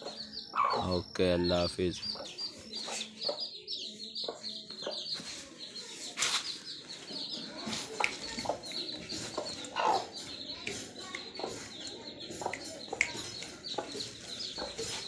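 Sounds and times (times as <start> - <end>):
chicks peeping: 0.0 - 15.0
hen clucking: 0.5 - 3.5, 9.4 - 10.1.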